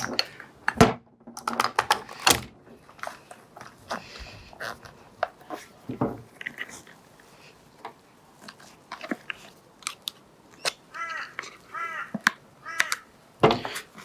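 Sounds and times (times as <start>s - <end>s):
crow cawing: 10.9s - 13.1s.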